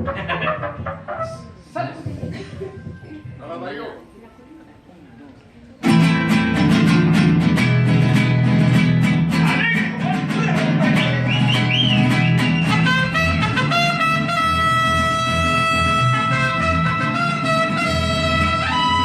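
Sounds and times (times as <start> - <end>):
mariachi band playing: 5.8 - 19.0.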